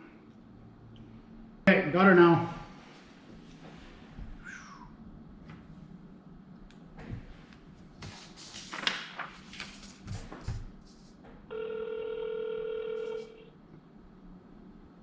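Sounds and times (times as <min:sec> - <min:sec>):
phone ringback tone: 0:11.5 - 0:13.5.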